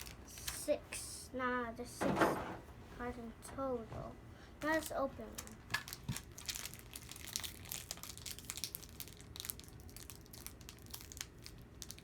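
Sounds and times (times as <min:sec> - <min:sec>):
foil wrapper crinkling: 0:04.7 - 0:12.0.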